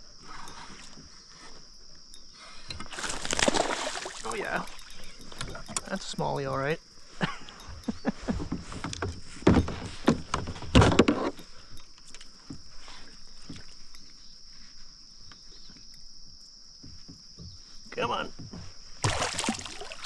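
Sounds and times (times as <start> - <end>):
small scattered ticks: 0.0 - 9.3, 10.6 - 18.8
crickets trilling: 0.0 - 20.0
fish splashing at the surface: 2.9 - 4.8, 19.0 - 20.0.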